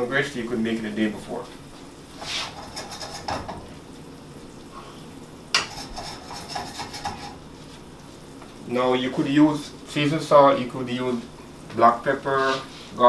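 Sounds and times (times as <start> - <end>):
utensil scraping in cooking pot: 2.1 - 3.8, 4.7 - 8.2, 12.3 - 13.0
utensil knocking against pot: 2.8 - 3.8, 5.5 - 7.4.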